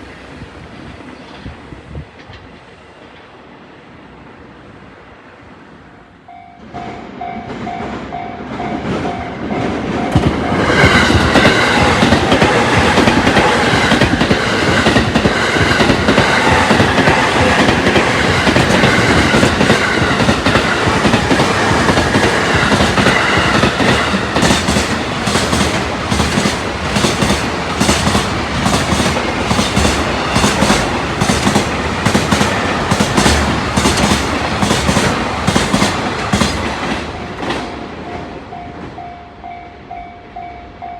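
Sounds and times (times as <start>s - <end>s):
freight train passing: 0.0s - 40.9s
level crossing warning bell: 6.3s - 12.0s, 37.2s - 40.9s
wagon wheels clacking over rail joints: 10.2s - 37.7s.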